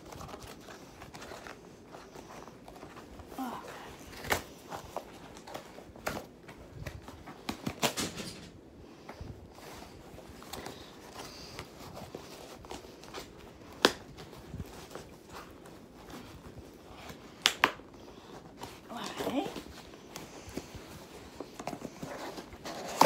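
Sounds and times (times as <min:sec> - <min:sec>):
cardboard box being opened: 0:20.8 - 0:23.0.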